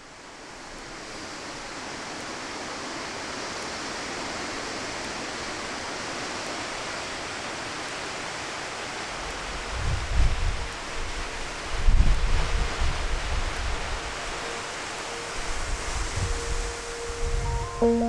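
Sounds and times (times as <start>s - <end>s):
wind buffeting microphone: 9.4s - 14.4s.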